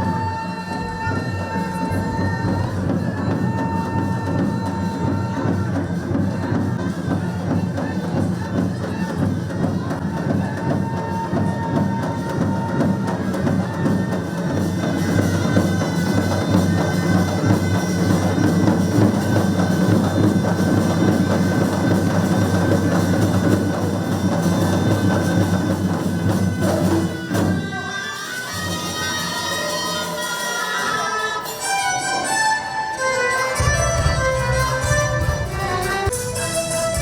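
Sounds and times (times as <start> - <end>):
fast dense drumming: 0.0 - 27.8.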